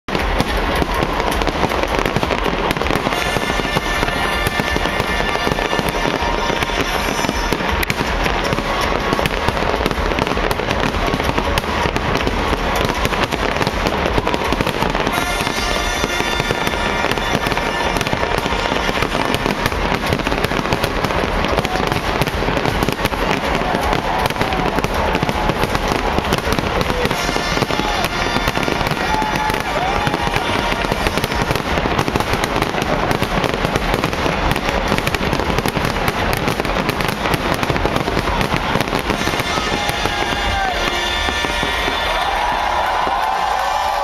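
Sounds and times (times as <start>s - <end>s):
fireworks bursting and crackling: 0.0s - 44.0s.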